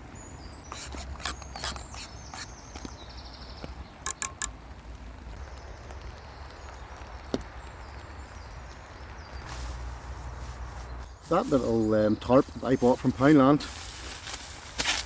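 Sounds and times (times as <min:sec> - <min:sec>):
sharp knocks and clicks: 0:03.6 - 0:04.5.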